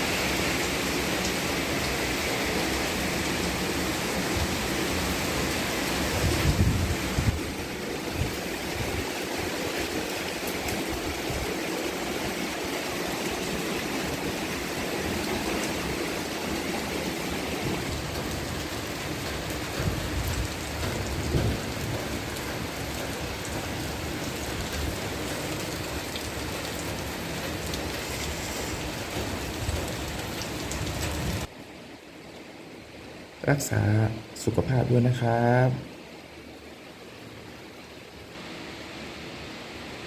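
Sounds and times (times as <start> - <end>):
steady rain: 0.0 - 40.0.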